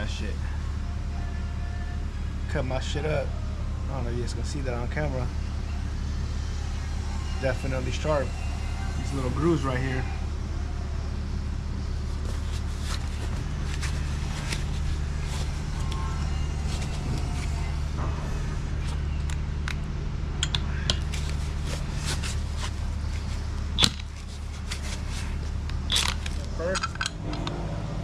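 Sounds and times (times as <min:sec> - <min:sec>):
low mechanical drone: 0:00.0 - 0:28.0
metal parts clicking: 0:25.9 - 0:27.6.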